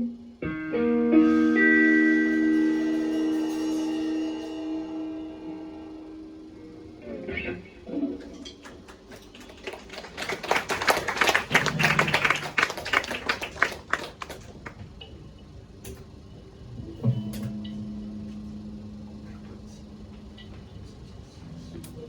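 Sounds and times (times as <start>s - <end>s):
people clapping: 8.1s - 15.1s.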